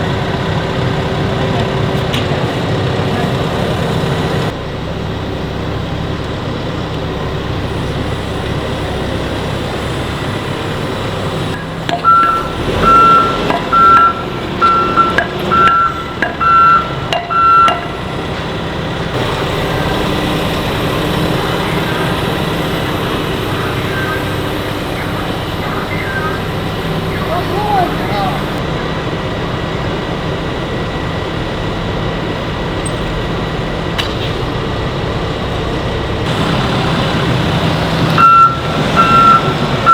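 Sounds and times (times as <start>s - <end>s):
diesel engine running: 0.0s - 39.9s
backup alarm beeping: 7.8s - 28.6s, 36.3s - 39.9s.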